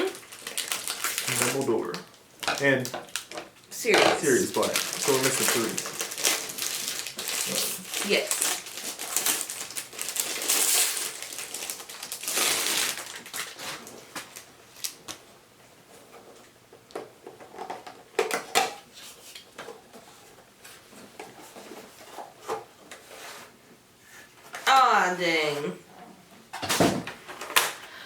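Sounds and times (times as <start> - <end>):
packaging tearing and crinkling: 0.0 - 3.5, 4.2 - 15.2.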